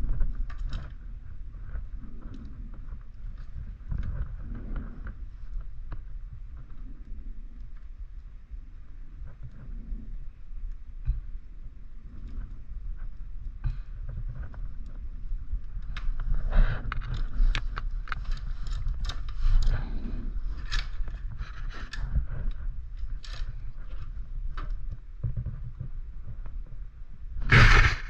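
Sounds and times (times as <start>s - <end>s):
loud clunk: 27.5s - 28.0s.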